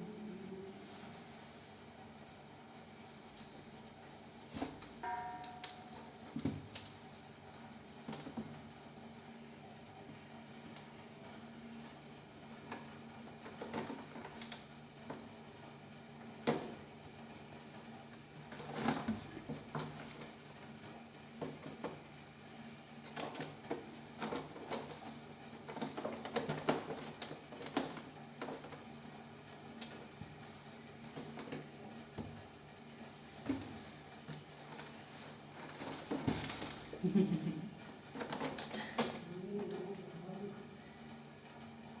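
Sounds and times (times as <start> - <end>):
faint low hum: 0.0 - 2.1
kittens tapping and scratching: 12.5 - 15.3, 18.1 - 29.1, 29.8 - 32.4, 33.4 - 40.0.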